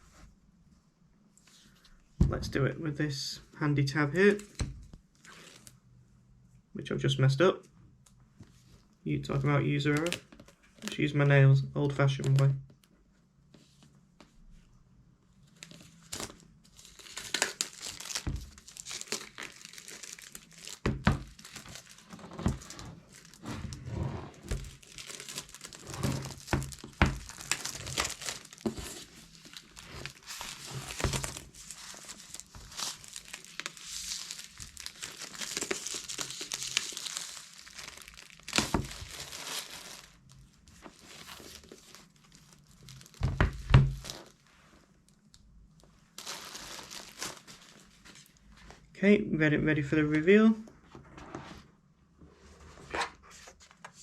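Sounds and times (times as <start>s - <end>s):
plastic wrap crinkling: 4.3s - 5.8s, 15.5s - 48.9s.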